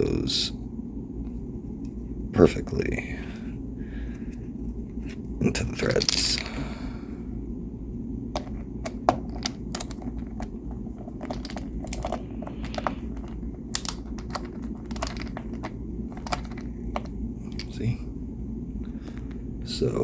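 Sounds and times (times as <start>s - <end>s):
steady low hum: 0.0s - 20.0s
small screw clicking and tapping: 8.4s - 17.1s.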